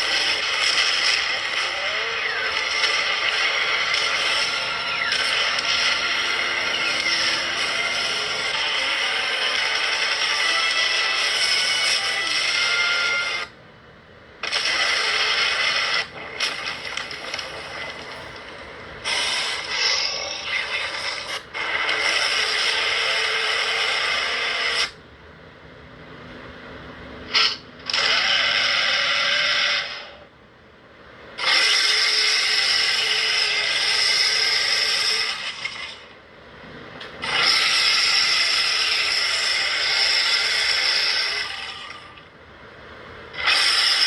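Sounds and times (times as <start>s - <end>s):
harsh raspy monster roars: 27.3s - 30.2s, 31.4s - 36.0s, 37.2s - 42.1s, 43.4s - 44.0s.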